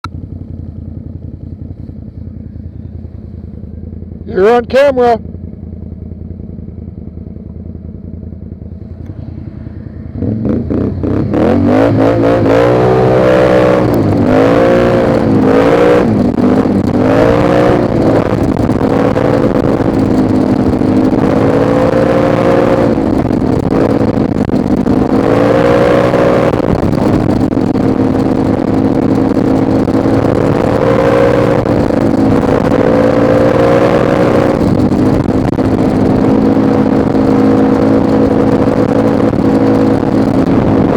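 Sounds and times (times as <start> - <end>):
quad bike engine revving: 8.8 - 40.9.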